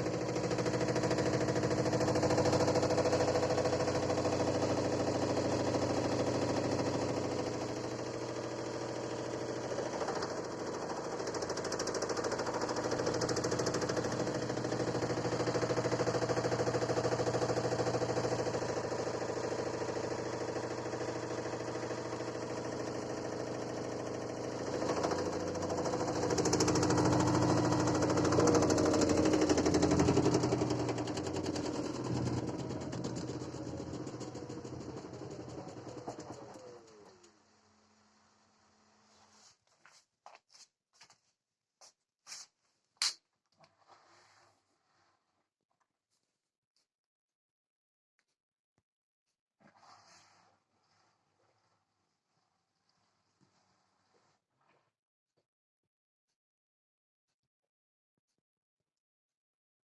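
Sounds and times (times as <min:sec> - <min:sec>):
washing machine motor hum: 0:00.0 - 0:39.2
rattling knock in washing machine: 0:24.8 - 0:36.6.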